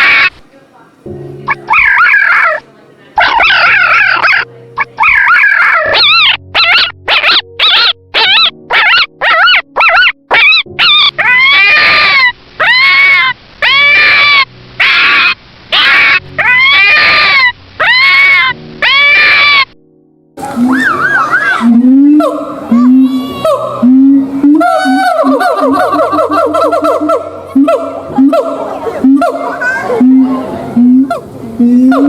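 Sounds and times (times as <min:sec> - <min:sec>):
puppy whining: 0:01.5 - 0:02.6, 0:03.2 - 0:16.9
puppy yipping: 0:01.5 - 0:02.6, 0:03.2 - 0:19.6.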